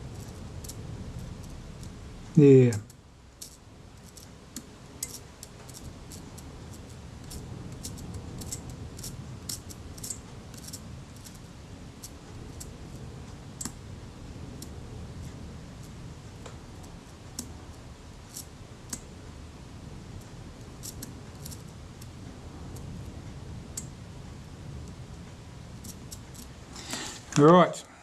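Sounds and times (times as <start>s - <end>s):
steady low hum: 0.0s - 28.0s
small metal parts clicking: 2.7s - 4.3s, 5.0s - 11.4s, 20.8s - 21.6s.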